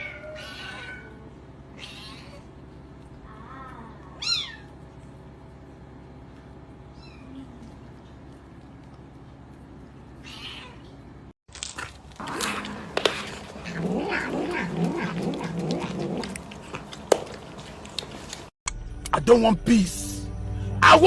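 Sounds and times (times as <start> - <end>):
cat yowling: 0.0 - 2.5, 3.3 - 4.8, 10.2 - 11.0
faint background hum: 0.0 - 18.5.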